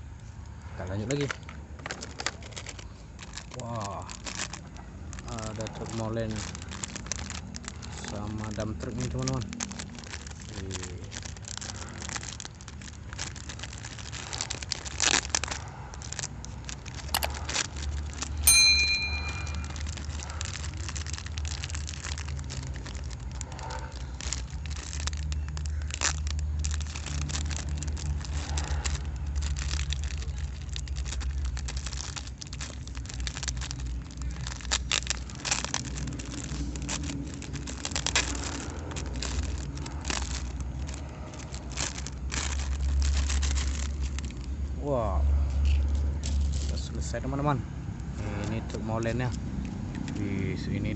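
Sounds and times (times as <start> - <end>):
plastic packaging rustling: 0.2 - 47.5
plastic parts clicking: 16.6 - 17.8
short ringing ping: 18.5 - 19.7.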